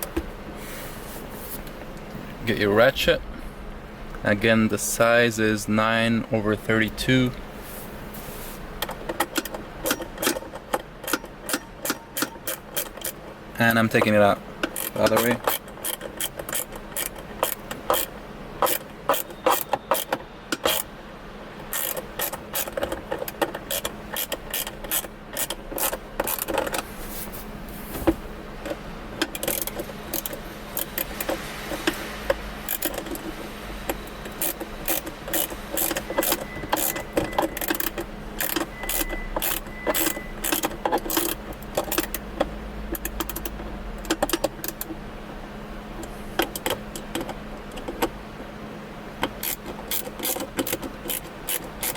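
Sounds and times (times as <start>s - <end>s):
socket ratchet clicking: 8.8s - 13.2s, 14.0s - 20.9s, 21.6s - 26.8s, 28.6s - 32.0s, 32.7s - 45.0s, 49.2s - 51.9s.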